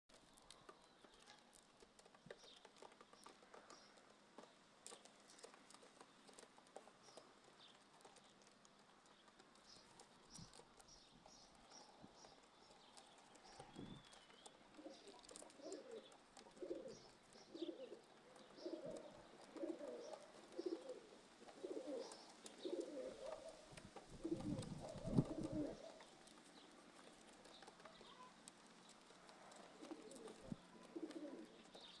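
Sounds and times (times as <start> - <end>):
small birds chirping: 0.1 - 32.0
pigeons cooing: 13.5 - 26.2, 29.5 - 32.0.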